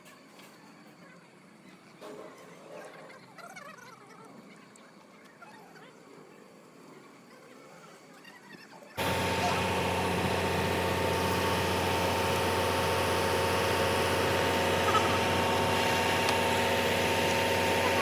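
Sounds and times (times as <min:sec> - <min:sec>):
engine idling: 0:09.0 - 0:18.0.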